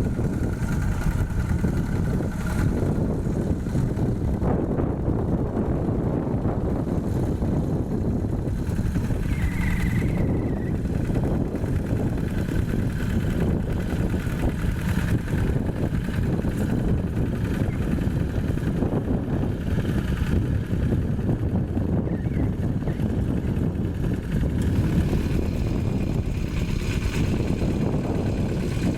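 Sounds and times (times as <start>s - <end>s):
diesel tractor engine running: 0.0s - 28.9s.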